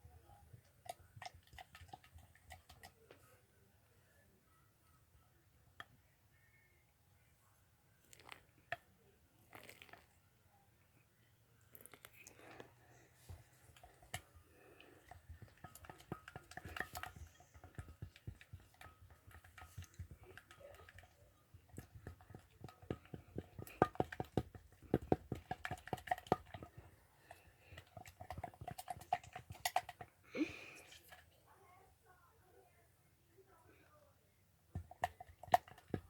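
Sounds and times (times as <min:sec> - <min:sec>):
spoon scraping a bowl: 0:13.4 - 0:31.2.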